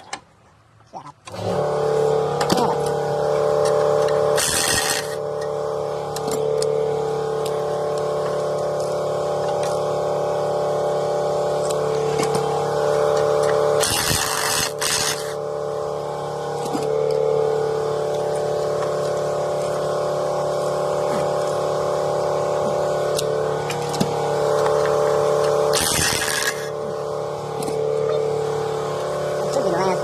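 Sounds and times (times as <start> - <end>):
steady mechanical hum: 0.0 - 30.0
air impact wrench bursts: 1.3 - 29.6.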